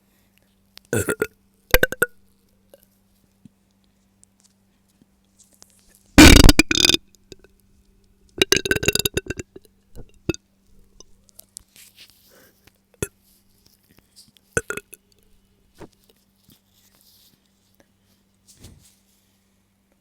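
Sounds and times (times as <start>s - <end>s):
woman burping: 1.0s - 2.1s, 6.2s - 7.0s, 8.4s - 10.4s, 14.6s - 14.9s.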